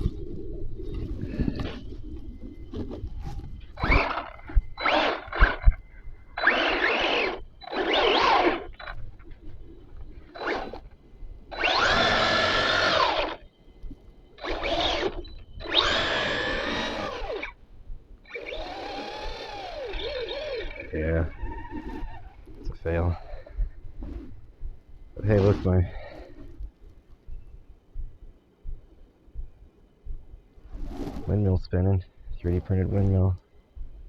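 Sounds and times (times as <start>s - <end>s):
electric motor whining: 2.7s - 13.5s, 14.4s - 17.6s, 18.3s - 24.4s.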